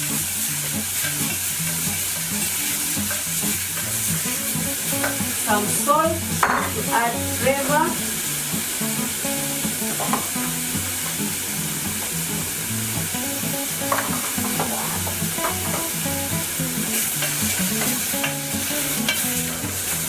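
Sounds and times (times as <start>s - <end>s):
sauce sizzling in a pan: 0.0s - 20.0s
spoon clicking against pan: 16.9s - 19.3s.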